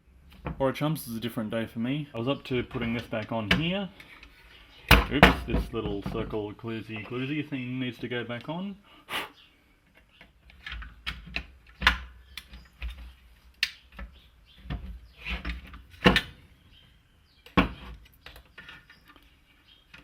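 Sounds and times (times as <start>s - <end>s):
nailer parts clicking and knocking: 2.7s - 3.8s, 4.9s - 7.2s, 10.2s - 16.4s.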